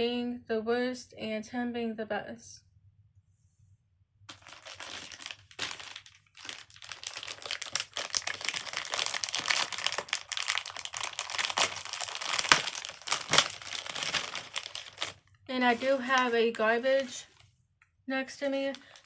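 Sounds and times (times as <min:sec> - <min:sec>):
plastic packaging crinkling: 0:04.3 - 0:17.4, 0:18.5 - 0:19.0.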